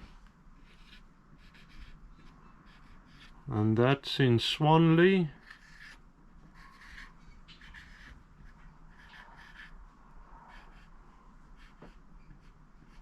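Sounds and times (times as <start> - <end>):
pen scratching while writing: 0.6 - 3.4, 6.6 - 9.8, 10.5 - 10.9, 11.6 - 13.0.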